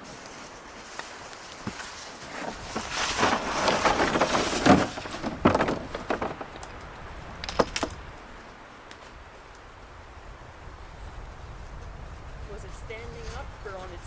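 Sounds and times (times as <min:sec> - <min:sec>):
gear rustling and scraping: 0:00.0 - 0:06.9.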